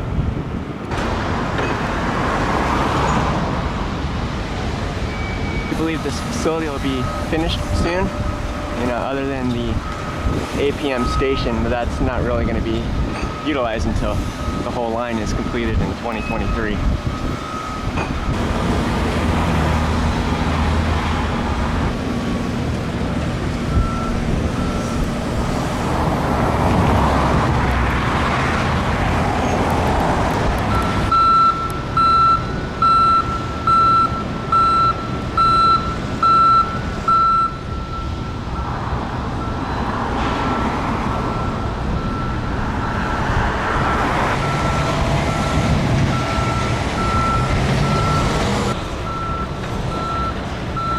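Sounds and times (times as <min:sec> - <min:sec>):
road traffic noise: 0:00.0 - 0:50.9
reversing alarm beeping: 0:05.0 - 0:18.4, 0:23.7 - 0:25.2, 0:30.7 - 0:38.8, 0:39.4 - 0:43.2, 0:44.2 - 0:48.4, 0:49.0 - 0:50.9.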